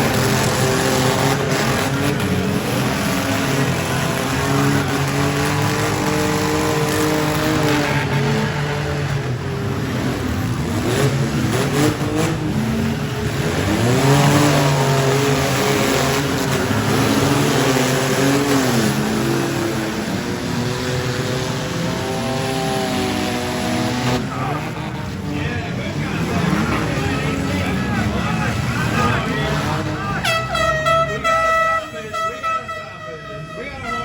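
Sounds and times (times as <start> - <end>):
car engines revving: 0.0 - 34.0.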